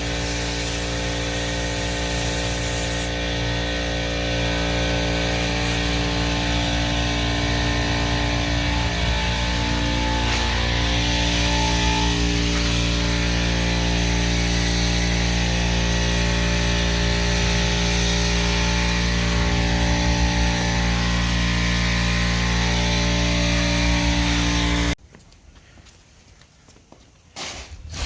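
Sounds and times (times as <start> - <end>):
air hissing: 0.0 - 3.3
electric motor humming: 0.0 - 25.0.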